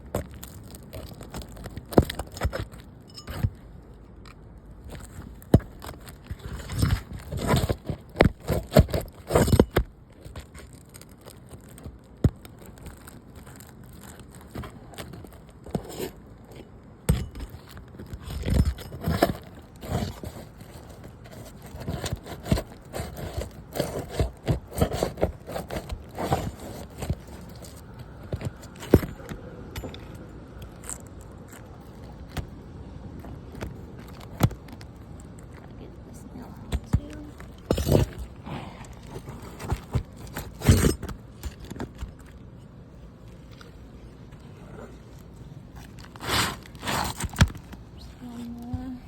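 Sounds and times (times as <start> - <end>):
metal tool scraping roof shingles: 0.0 - 3.6, 4.8 - 32.5, 36.6 - 42.8, 44.6 - 48.0.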